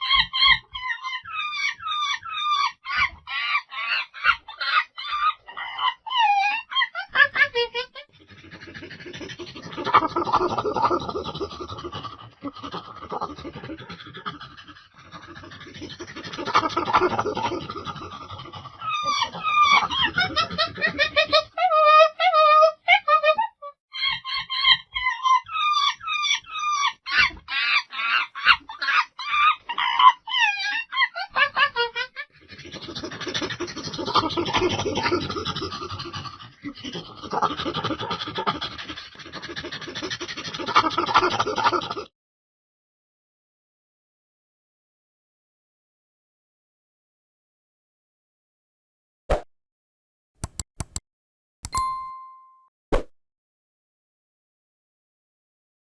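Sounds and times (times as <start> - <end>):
monkey squealing and chattering: 0.0 - 7.5, 18.6 - 21.1, 24.0 - 31.7
monkey making raspy noises: 0.0 - 42.1.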